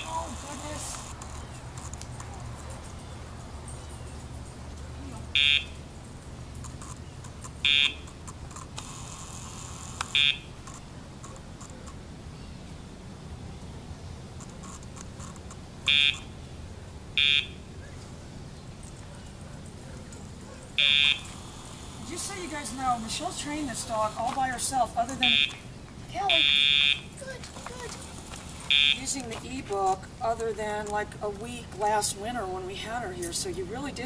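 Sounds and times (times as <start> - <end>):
short electronic buzzes: 7.6 - 10.6, 20.8 - 22.2.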